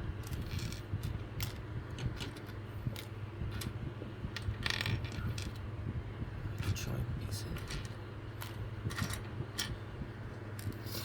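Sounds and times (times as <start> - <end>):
steady low hum: 0.0 - 11.0
plastic parts clicking and clattering: 0.2 - 3.7, 4.4 - 5.6, 7.6 - 9.8.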